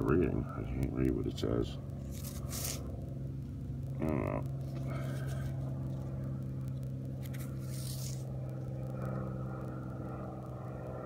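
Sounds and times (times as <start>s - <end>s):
steady low hum: 0.0s - 11.0s
dirt rubbed off metal: 2.1s - 2.9s.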